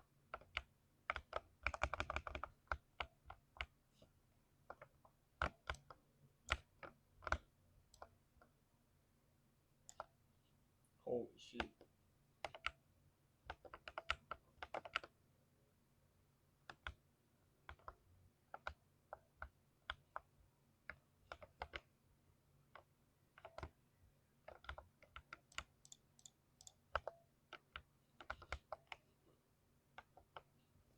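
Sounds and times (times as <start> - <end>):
mechanical keyboard typing: 0.3 - 3.7, 4.7 - 8.1, 12.4 - 12.8, 13.5 - 15.1, 20.9 - 21.9, 22.7 - 23.8, 24.4 - 29.0.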